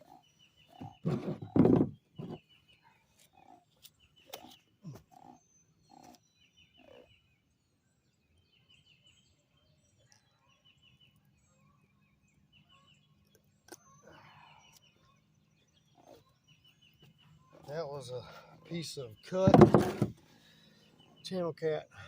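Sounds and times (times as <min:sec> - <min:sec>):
songbird trilling: 0:02.0 - 0:07.6, 0:09.9 - 0:21.8
soft knocks: 0:19.4 - 0:20.2.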